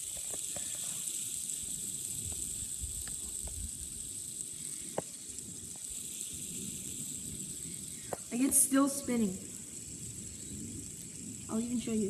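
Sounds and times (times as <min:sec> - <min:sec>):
faint ticks: 0:00.0 - 0:08.9
fidget spinner bearing hissing: 0:00.0 - 0:12.0.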